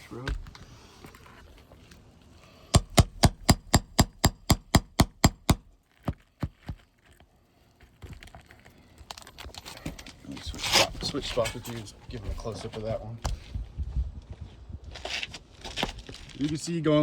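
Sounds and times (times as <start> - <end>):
hammer striking metal nail puller: 2.8 - 5.7.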